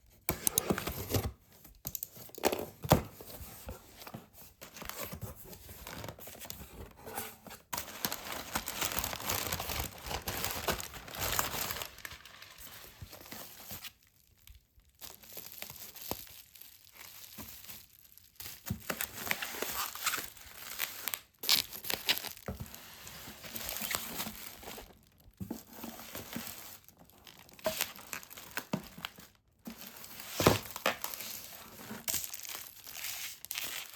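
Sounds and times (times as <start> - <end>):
packaging crinkling and tearing: 7.8 - 22.7, 23.4 - 33.9.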